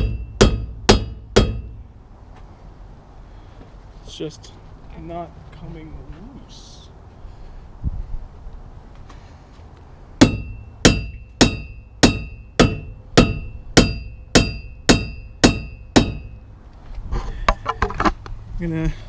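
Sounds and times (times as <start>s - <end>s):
rubber mallet striking metal: 0.0s - 1.8s, 10.2s - 16.4s.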